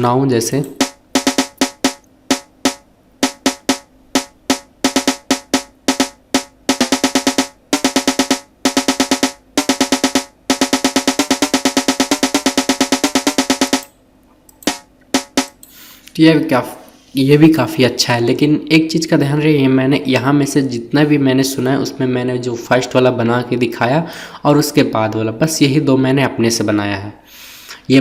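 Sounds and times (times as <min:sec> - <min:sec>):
snare drum roll: 0:00.7 - 0:13.9, 0:14.6 - 0:15.6.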